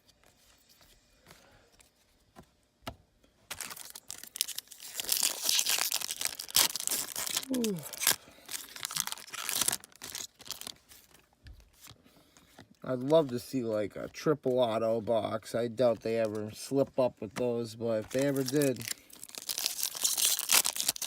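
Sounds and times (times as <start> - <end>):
wrapper tearing and crinkling: 3.5 - 11.2, 18.0 - 21.0.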